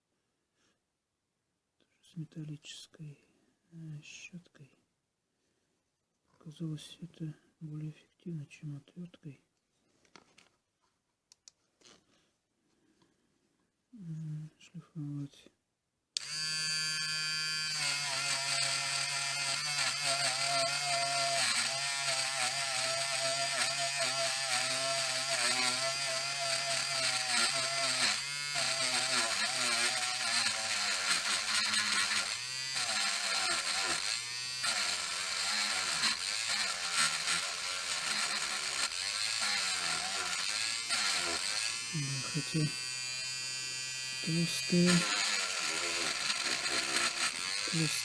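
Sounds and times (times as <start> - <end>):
wire brush grinder on metal: 16.2 - 48.0.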